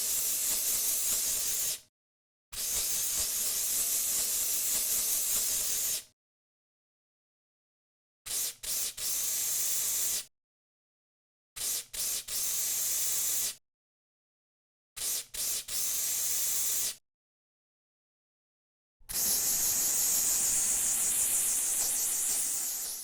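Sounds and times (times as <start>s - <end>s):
aerosol spray puffs and spraying: 0.0s - 1.8s, 2.6s - 6.1s, 8.3s - 10.3s, 11.6s - 13.6s, 15.0s - 17.0s, 19.1s - 23.0s.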